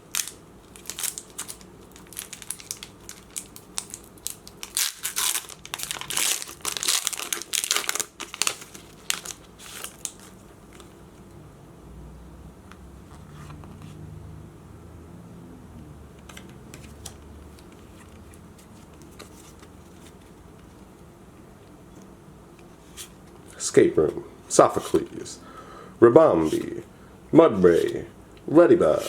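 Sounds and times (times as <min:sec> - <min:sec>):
foil wrapper crinkling and tearing: 0:00.1 - 0:10.8.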